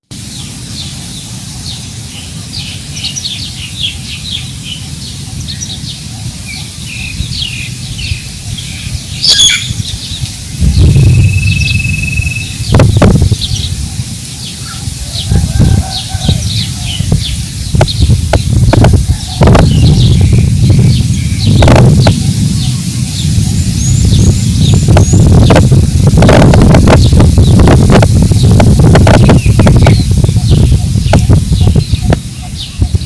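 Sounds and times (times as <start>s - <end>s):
small birds chirping: 0.1s - 33.0s
wind buffeting microphone: 0.1s - 33.0s
loud sharp bird call: 0.3s - 13.8s.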